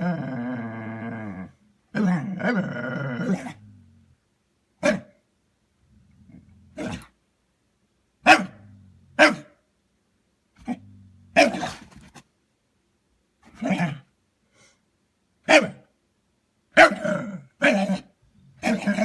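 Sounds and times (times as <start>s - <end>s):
dog growling: 0.0s - 4.2s, 5.9s - 7.2s, 10.6s - 12.1s, 16.9s - 19.0s
dog barking: 4.8s - 5.2s, 8.2s - 8.6s, 9.2s - 9.6s, 11.4s - 11.8s, 15.4s - 15.9s, 16.8s - 19.0s.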